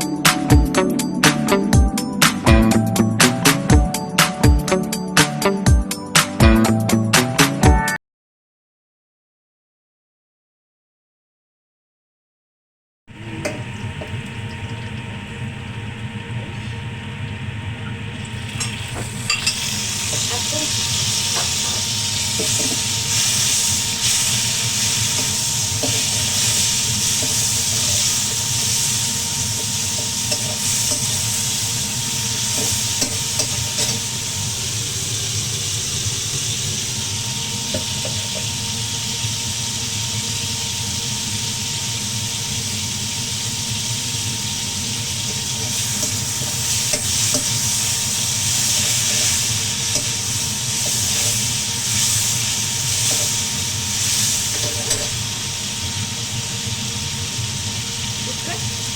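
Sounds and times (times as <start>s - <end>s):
vegetables sizzling in a hot pan: 13.1s - 58.9s
spatula scraping a pan: 19.3s - 31.6s, 45.3s - 55.2s.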